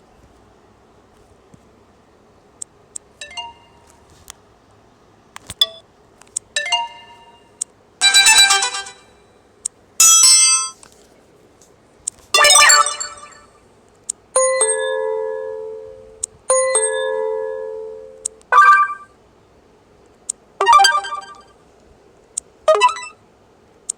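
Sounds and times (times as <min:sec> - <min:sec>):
short bell-like chimes: 0:12.4 - 0:13.5.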